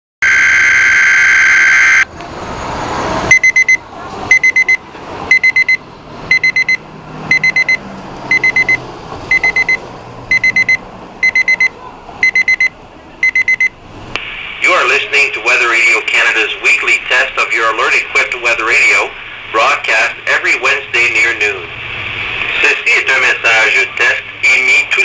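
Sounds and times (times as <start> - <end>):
alarm radio high beeps: 0.2 - 2.1, 3.3 - 13.8
static: 0.2 - 2.1, 14.2 - 25.0.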